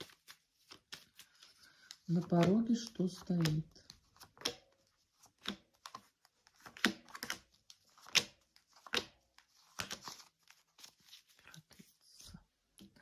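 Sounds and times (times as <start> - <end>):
cards being shuffled: 0.0 - 13.0.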